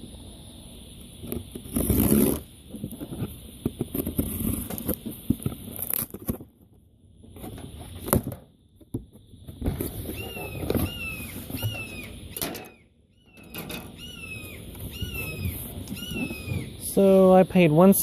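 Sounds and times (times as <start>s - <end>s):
packaging rustling and scraping: 1.5s - 6.6s
hawk screaming: 13.3s - 16.8s.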